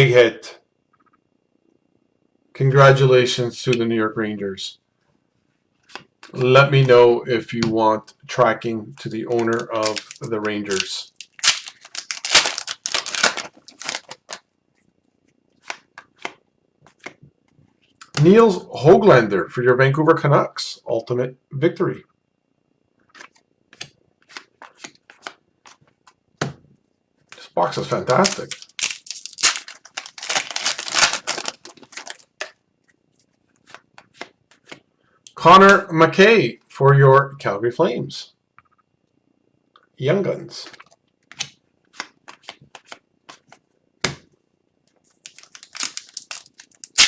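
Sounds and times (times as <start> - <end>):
wrapper tearing and crinkling: 9.5 - 14.4, 28.0 - 32.3, 45.2 - 47.0.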